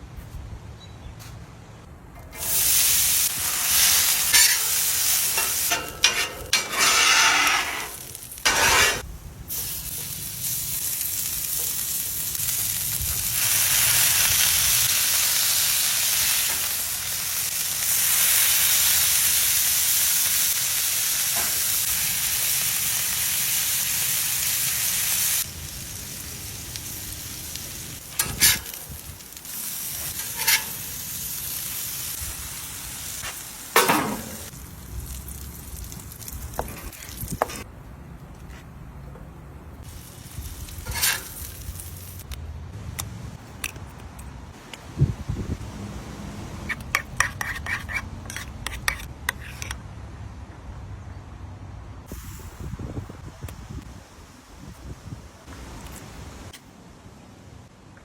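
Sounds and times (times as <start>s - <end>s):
food sizzling on hot surface: 2.3s - 37.7s, 39.8s - 42.3s.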